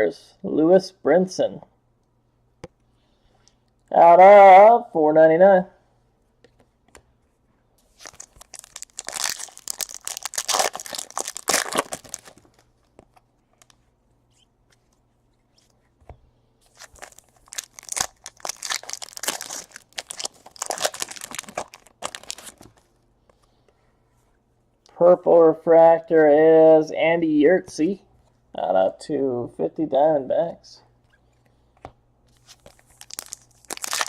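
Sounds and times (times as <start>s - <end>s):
foil wrappers tearing and crinkling: 7.9s - 12.7s, 16.7s - 22.8s, 32.6s - 34.0s.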